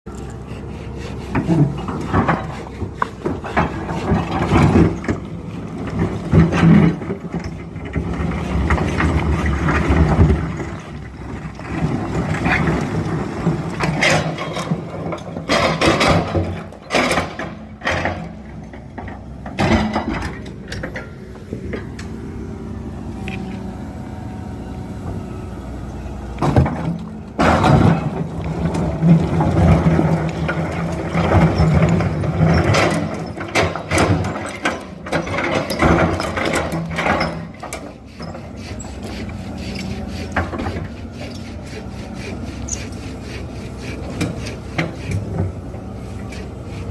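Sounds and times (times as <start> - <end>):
excavator engine running: 0.1 - 46.9
metallic clanks and knocks: 13.7 - 22.1, 26.4 - 37.9.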